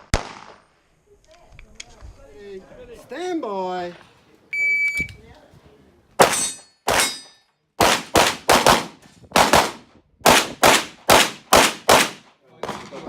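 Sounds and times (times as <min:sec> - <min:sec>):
pistol shots: 0:00.0 - 0:00.7, 0:06.2 - 0:12.9
metallic ring: 0:06.3 - 0:07.5.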